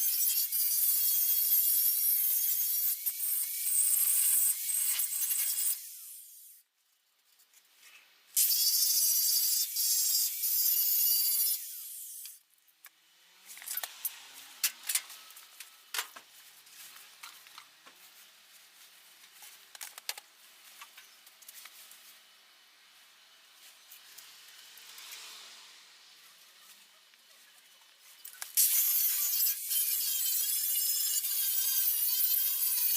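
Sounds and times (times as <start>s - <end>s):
angle grinder grinding steel: 0.0s - 6.6s, 28.2s - 32.9s
metal scrapes and clicks: 13.5s - 16.2s.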